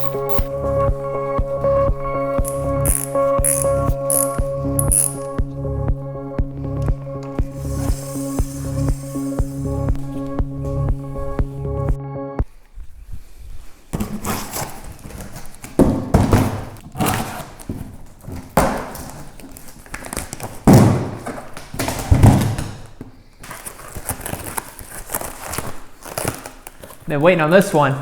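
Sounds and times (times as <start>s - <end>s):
hand tools and metal parts clattering: 0.0s - 0.5s.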